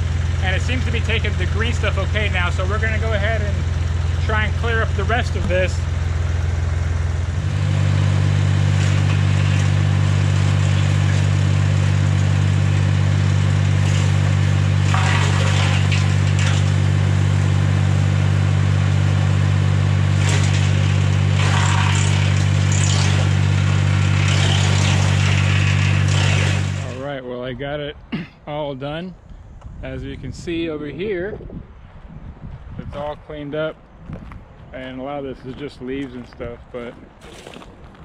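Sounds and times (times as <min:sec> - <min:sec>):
tractor engine running: 0:00.0 - 0:27.0
wood chipper chipping brush: 0:00.0 - 0:27.0.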